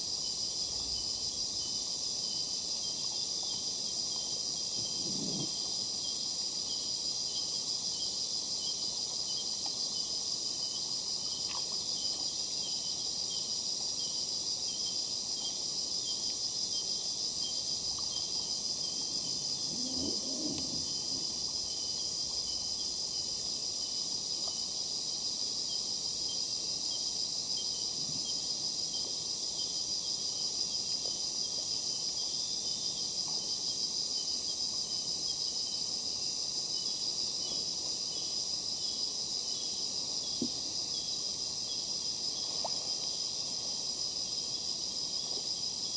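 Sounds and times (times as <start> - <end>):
insect chorus buzzing: 0.0 - 45.9
low animal call: 19.6 - 21.4.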